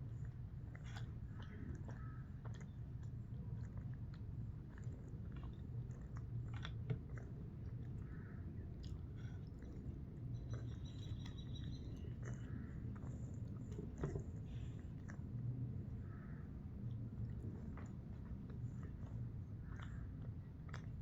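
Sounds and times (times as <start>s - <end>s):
person chewing food: 0.0s - 16.1s, 16.8s - 21.0s.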